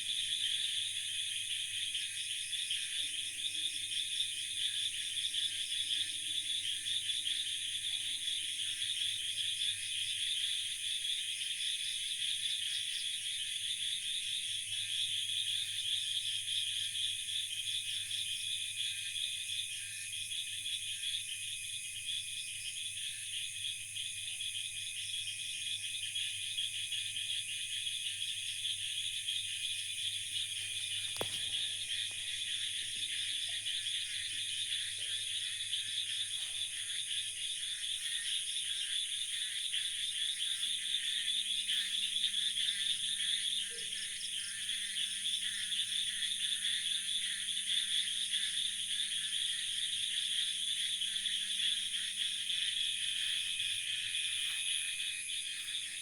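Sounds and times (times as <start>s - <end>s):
frogs and insects calling: 0.0s - 56.0s
brief click: 31.1s - 31.7s.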